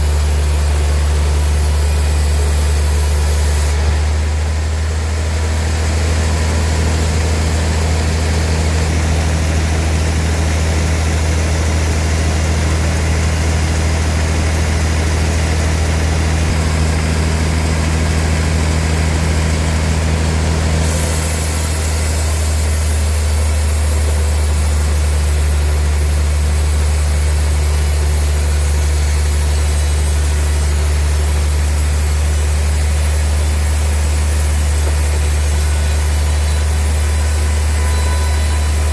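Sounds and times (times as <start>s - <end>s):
machinery hiss: 0.0s - 11.9s, 16.4s - 38.9s
sawmill machinery humming: 0.0s - 38.9s.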